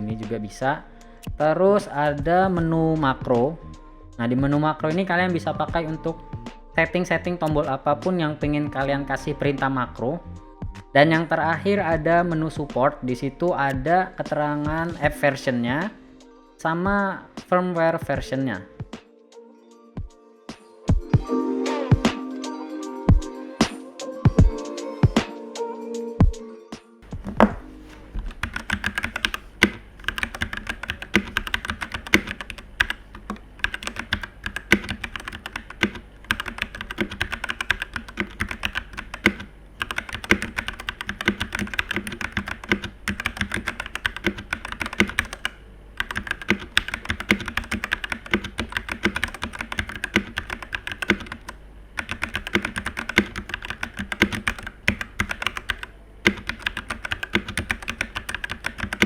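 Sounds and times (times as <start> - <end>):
mechanical keyboard typing: 28.3 - 59.0.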